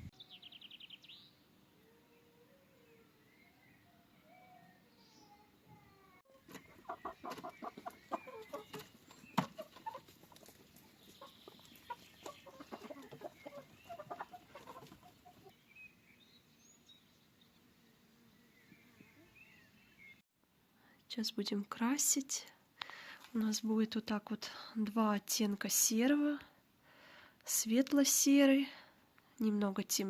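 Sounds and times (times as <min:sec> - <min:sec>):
chickens clucking: 0:06.3 - 0:15.6.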